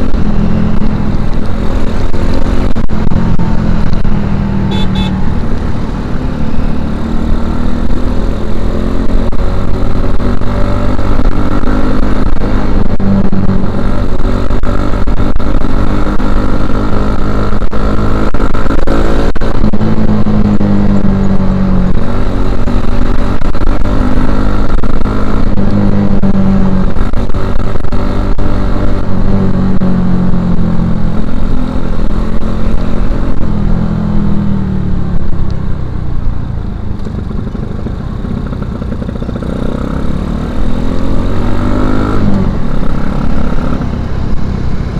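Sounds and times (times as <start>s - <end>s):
motorcycle engine revving: 0.0s - 44.9s.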